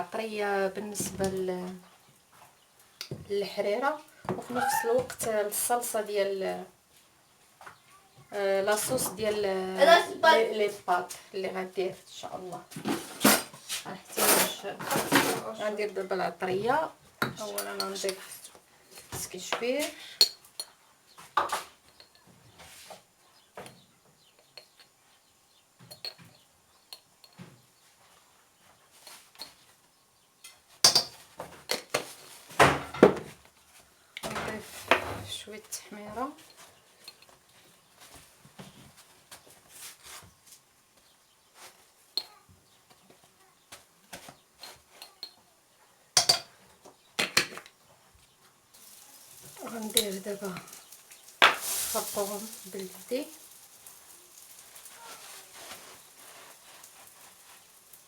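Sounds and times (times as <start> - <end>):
kitchen utensils tapping and clinking: 30.8 - 32.0, 46.2 - 46.5.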